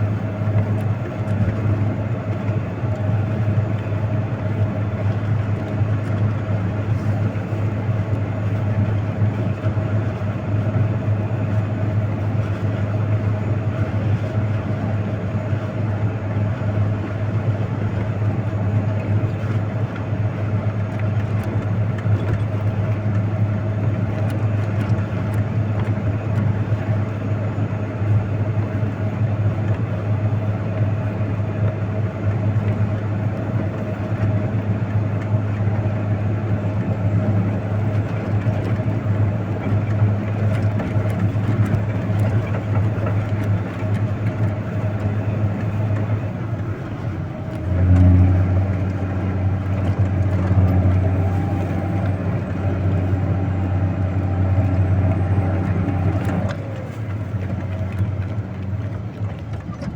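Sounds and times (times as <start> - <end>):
heavy vehicle engine droning: 0.0 - 59.9.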